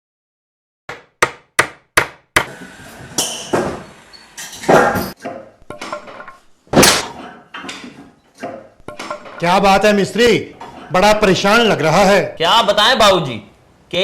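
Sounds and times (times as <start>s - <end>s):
hammer striking nails: 0.9s - 2.5s.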